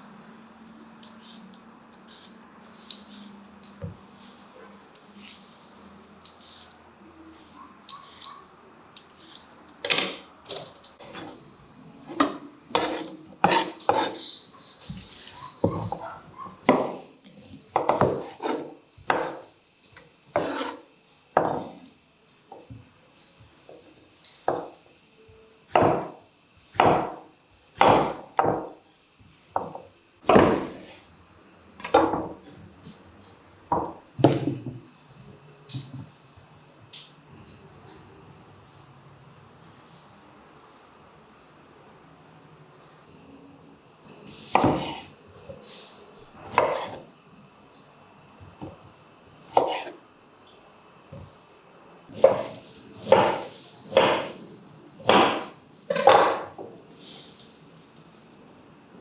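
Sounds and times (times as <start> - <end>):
knife slicing on wooden board: 12.8 - 14.2, 20.4 - 20.8, 46.5 - 47.0, 49.5 - 50.0.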